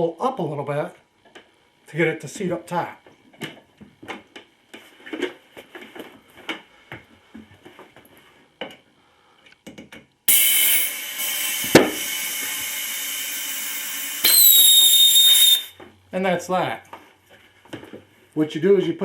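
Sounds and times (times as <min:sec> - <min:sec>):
compressed air hissing: 0:14.2 - 0:15.7.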